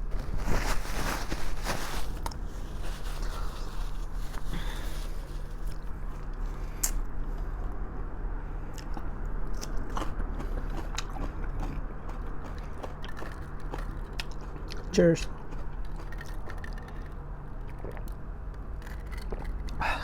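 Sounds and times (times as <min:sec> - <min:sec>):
steady low hum: 0:00.0 - 0:20.0
person chewing food: 0:08.6 - 0:20.0.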